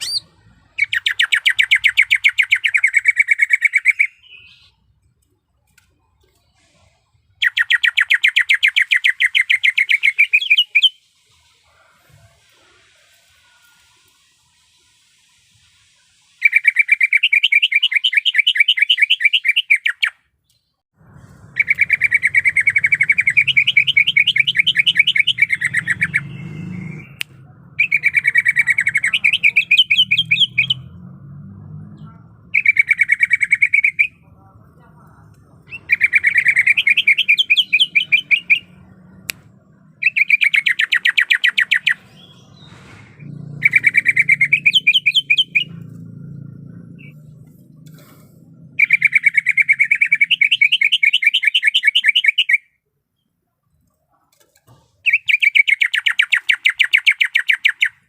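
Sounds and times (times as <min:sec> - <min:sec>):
bird singing rattling trills: 0:00.0 - 0:04.9, 0:07.4 - 0:11.6, 0:21.5 - 0:27.2, 0:31.7 - 0:34.2, 0:35.6 - 0:42.8, 0:43.5 - 0:47.5, 0:48.7 - 0:52.6, 0:55.0 - 0:58.0.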